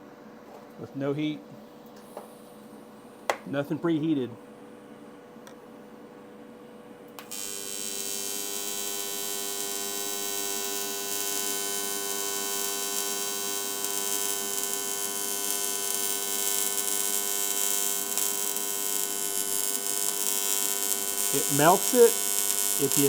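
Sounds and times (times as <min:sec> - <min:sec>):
welding arc buzzing hum: 0:06.9 - 0:23.0
welding arc strike click: 0:07.2 - 0:23.0.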